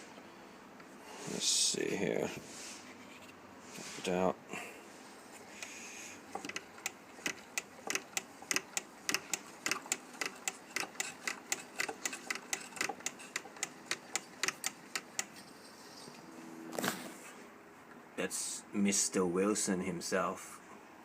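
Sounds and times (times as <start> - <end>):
sewing machine clicking: 6.3 - 15.3.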